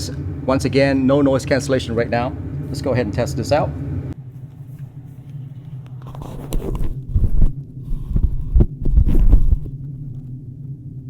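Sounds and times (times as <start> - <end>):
low hum of airplane cabin noise: 0.0 - 11.0
rubbing and thumps on microphones: 4.4 - 10.3.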